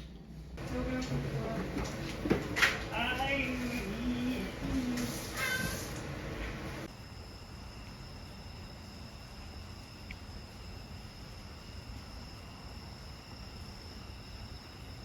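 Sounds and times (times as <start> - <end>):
low background hum: 0.0 - 15.0
crickets trilling: 6.8 - 15.0.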